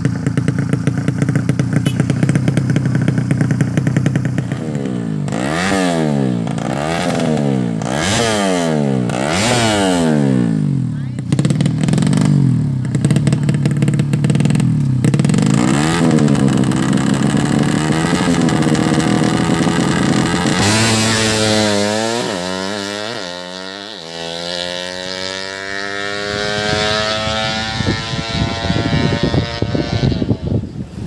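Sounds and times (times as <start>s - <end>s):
motorcycle engine revving and accelerating: 0.0s - 31.0s.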